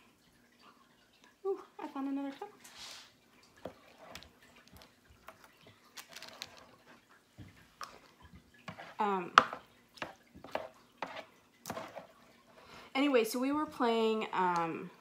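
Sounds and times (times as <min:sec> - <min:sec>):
containers and utensils clicking: 0:03.7 - 0:06.9.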